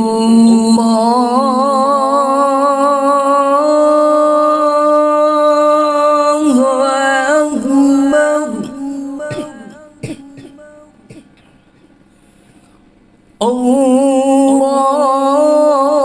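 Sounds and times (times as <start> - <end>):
person chanting a held note: 0.0 - 11.3.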